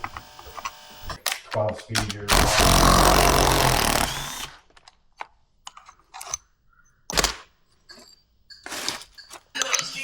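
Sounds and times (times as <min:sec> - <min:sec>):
tools clicking and knocking: 0:04.6 - 0:06.5.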